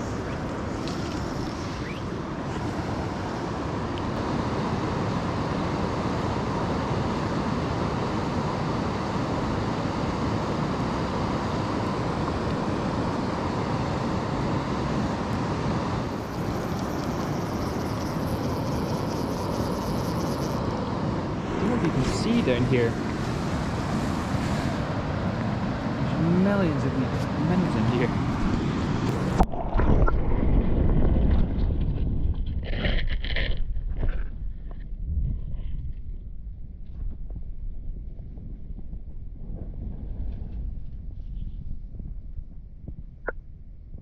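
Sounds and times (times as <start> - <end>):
river water rushing: 12.6 - 26.4.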